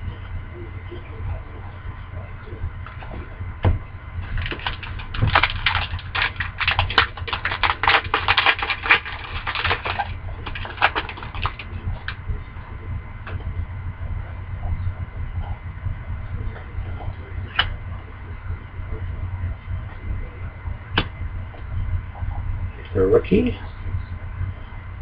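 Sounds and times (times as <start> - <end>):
steady low hum: 0.0 - 25.0
card pack crackling: 4.2 - 12.2.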